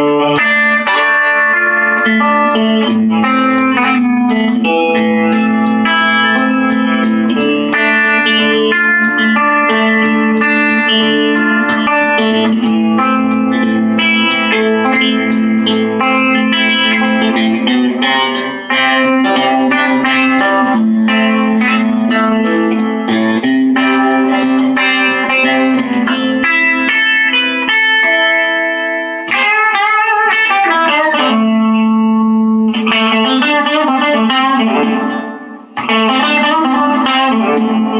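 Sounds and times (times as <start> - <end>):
electric guitar melody: 0.0 - 37.9.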